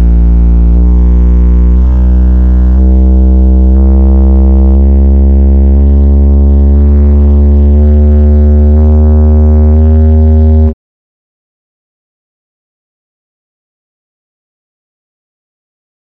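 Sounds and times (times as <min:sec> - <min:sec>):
deep droning bass tones: 0:00.0 - 0:10.8.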